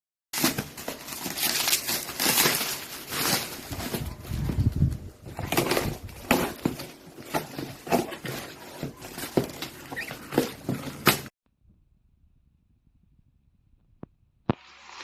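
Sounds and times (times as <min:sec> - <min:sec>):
rustling: 0:00.4 - 0:11.3.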